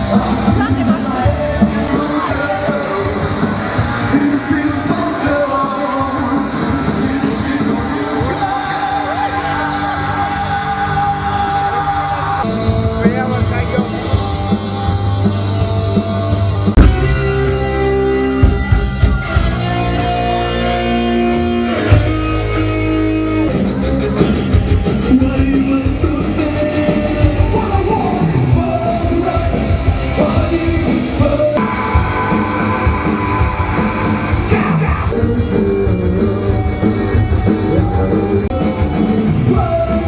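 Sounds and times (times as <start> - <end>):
electric guitar: 0.0 - 40.0
live rock band: 0.0 - 40.0
person singing: 25.0 - 40.0.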